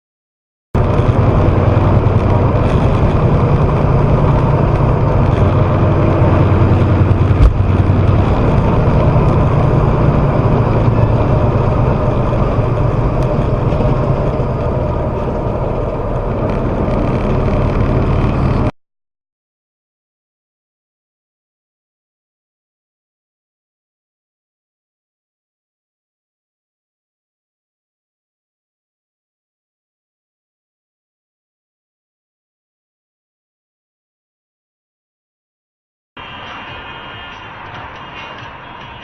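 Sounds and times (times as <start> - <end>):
vehicle engine and road rumble: 0.8 - 18.8, 36.2 - 39.0.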